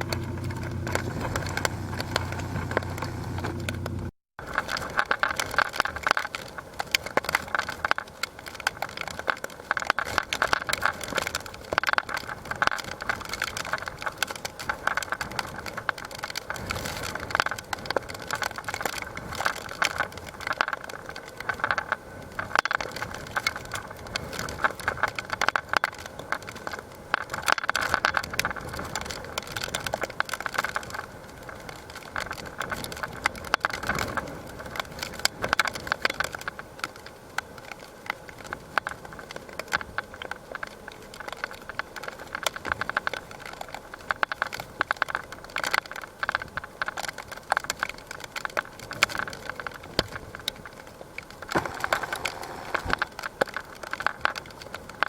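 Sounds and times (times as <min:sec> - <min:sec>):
strong wind: 0:00.0 - 0:04.1
crackle and rattle of clicks: 0:00.0 - 0:55.0
rain: 0:00.0 - 0:55.0.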